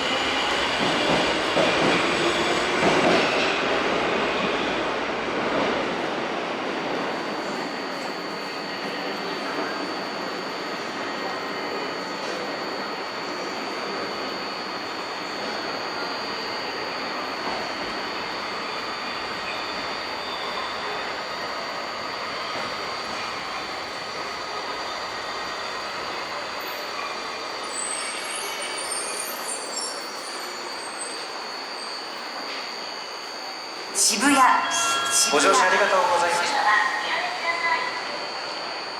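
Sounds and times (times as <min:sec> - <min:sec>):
subway train rail noise: 0:00.0 - 0:38.9
thin high whine: 0:31.7 - 0:38.9.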